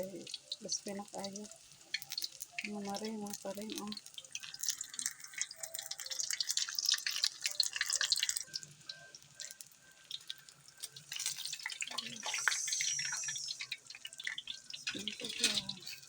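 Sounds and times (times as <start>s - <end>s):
hot oil crackling and popping: 0.0s - 16.0s.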